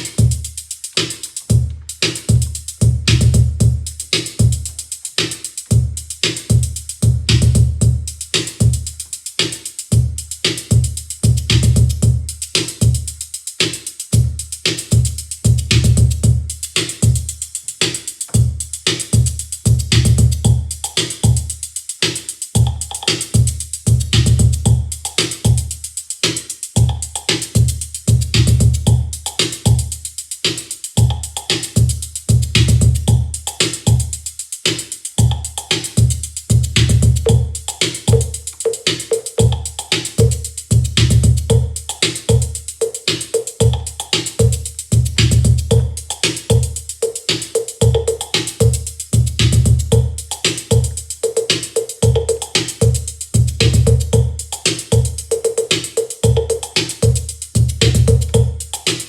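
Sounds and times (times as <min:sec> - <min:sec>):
higher-pitched drum tone: 0:00.0 - 0:59.0
sharp high ticks: 0:16.6 - 0:59.0
deep booming bass drum: 0:43.6 - 0:46.7, 0:56.2 - 0:58.6.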